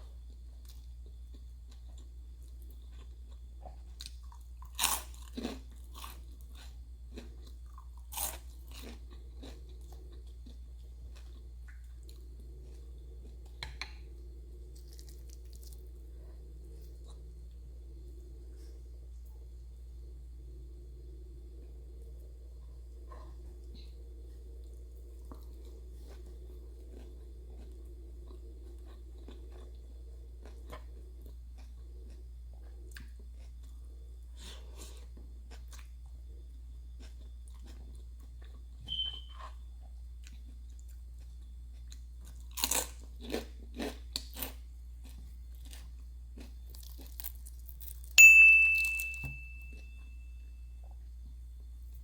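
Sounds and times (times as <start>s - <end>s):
chewing crunchy food: 0.0s - 19.4s, 21.5s - 48.2s
sharp ringing clink: 48.2s - 50.4s.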